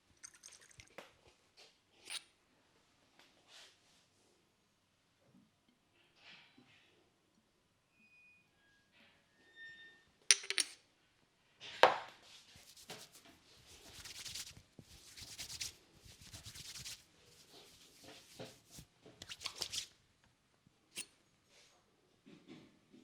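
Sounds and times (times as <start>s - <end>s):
fingers rubbing through hair: 12.6s - 19.9s
quick clicks and pats: 13.8s - 17.0s.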